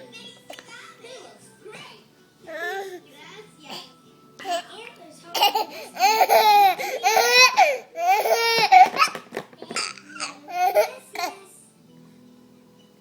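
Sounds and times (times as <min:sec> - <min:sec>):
baby laughing: 0:05.3 - 0:11.4.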